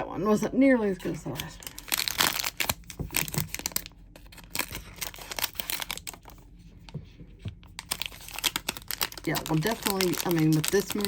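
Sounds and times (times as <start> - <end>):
wrapper crinkling and tearing: 1.3 - 6.4, 7.7 - 11.0.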